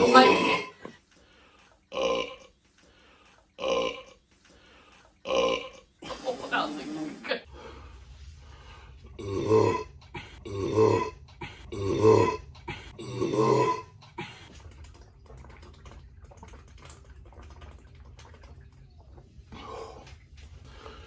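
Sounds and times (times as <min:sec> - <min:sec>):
person burping: 0:00.0 - 0:00.9, 0:01.9 - 0:02.5, 0:03.6 - 0:04.2, 0:05.2 - 0:07.5, 0:09.2 - 0:14.5.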